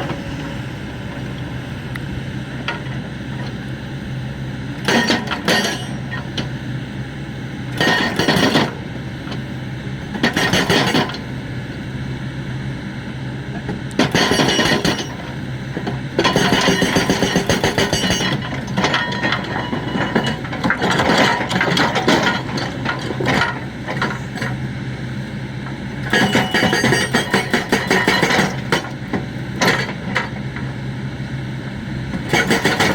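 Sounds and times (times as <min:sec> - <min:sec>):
excavator engine running: 0:00.0 - 0:32.9
hydraulic breaker hammering: 0:13.6 - 0:24.6, 0:26.0 - 0:30.4, 0:32.1 - 0:32.9.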